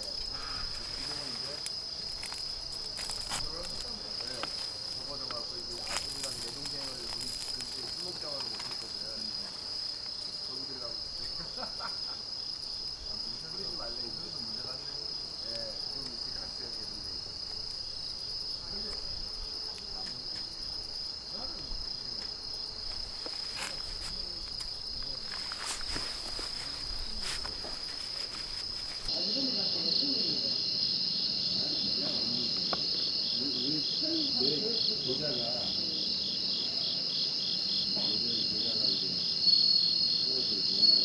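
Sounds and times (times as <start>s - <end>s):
insects trilling: 0.0s - 41.0s.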